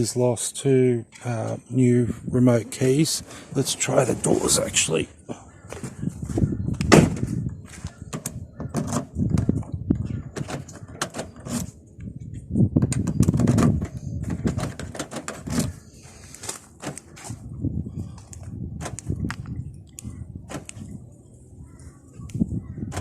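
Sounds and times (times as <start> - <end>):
car door lock clicks and knocks: 6.7 - 7.2, 20.5 - 20.8.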